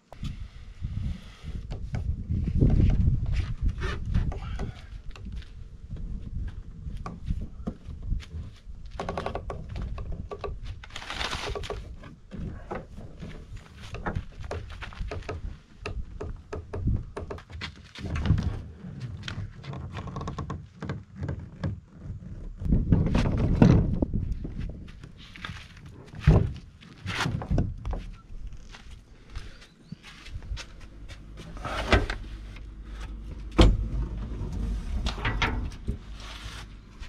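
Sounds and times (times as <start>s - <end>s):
gear knocks and thunks: 1.7s - 28.9s, 30.3s - 37.0s
low rumble: 30.3s - 37.0s.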